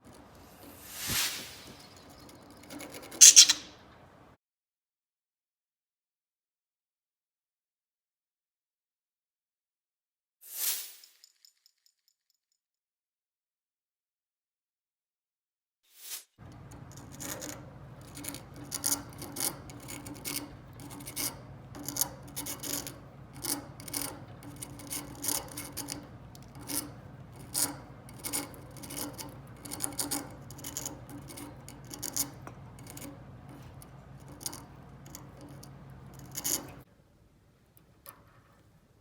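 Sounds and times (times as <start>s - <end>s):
beaks scraping cuttlebone: 1.9s - 3.8s.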